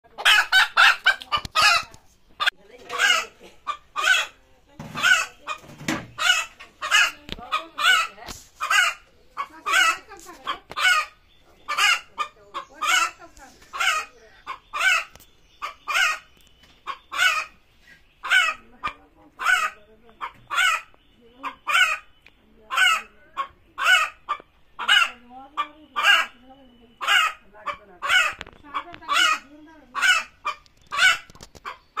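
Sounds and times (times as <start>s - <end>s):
hen squawking: 0.1s - 16.3s, 16.9s - 17.6s, 18.2s - 32.0s.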